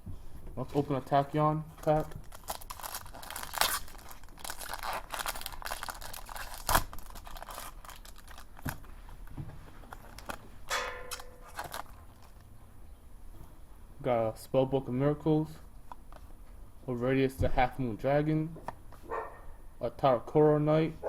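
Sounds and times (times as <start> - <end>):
foil wrapper tearing and crinkling: 1.8 - 8.8, 11.1 - 12.4.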